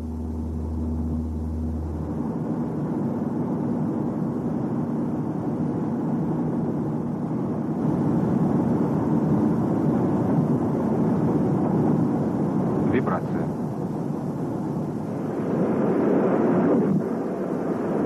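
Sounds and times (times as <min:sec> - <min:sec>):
vehicle running rumble: 0:00.0 - 0:05.8.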